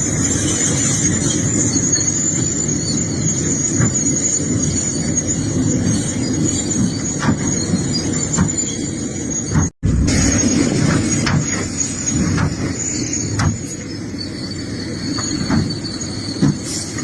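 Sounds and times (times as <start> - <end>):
excavator engine rumble: 0.0 - 17.0
high-pitched whine: 0.0 - 17.0.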